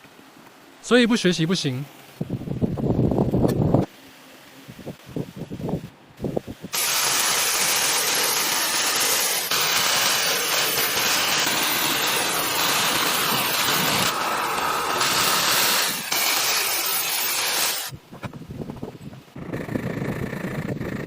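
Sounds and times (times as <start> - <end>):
workshop tool hissing: 6.7 - 18.0.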